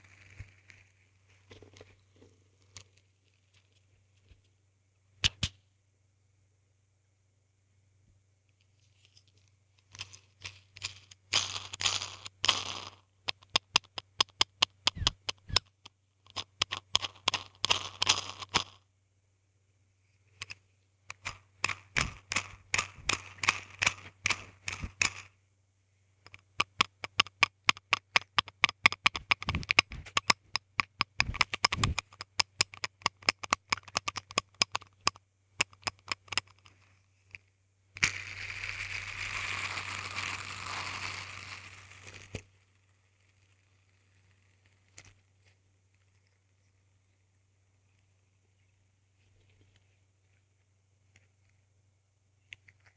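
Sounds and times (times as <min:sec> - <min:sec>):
faint low hum: 0:00.0 - 0:52.9
hand spinner clicking: 0:26.3 - 0:36.7.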